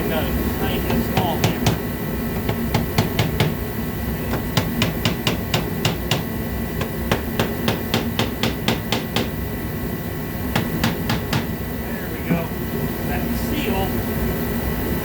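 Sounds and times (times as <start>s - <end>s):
small hammer tapping: 0.9s - 1.8s, 2.4s - 3.6s, 4.3s - 9.4s, 10.5s - 11.5s.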